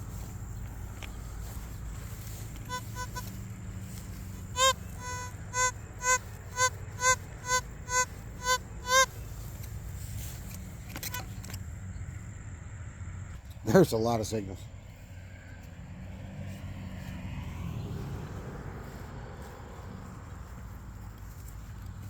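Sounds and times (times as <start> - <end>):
metal detector beeping: 0.0 - 11.6.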